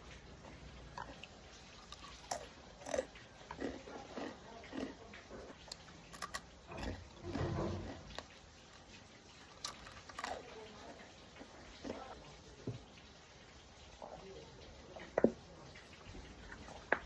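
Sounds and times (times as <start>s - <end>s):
person slurping and chewing noodles: 0.0s - 12.3s.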